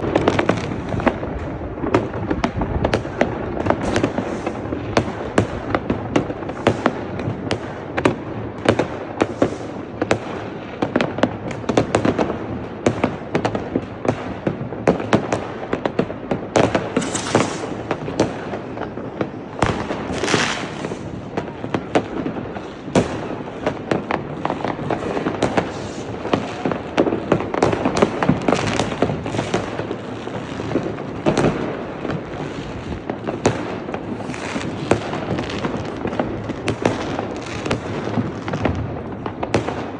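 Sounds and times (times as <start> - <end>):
fireworks bangs and pops: 0.0 - 39.9
firework hissing bursts: 16.6 - 21.2.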